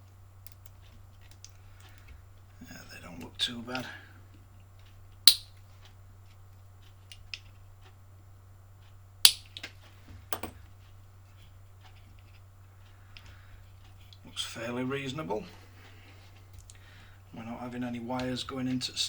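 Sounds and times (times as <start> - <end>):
low steady hum: 0.0 - 19.0
tools and parts clicking: 5.3 - 5.6, 9.3 - 9.7.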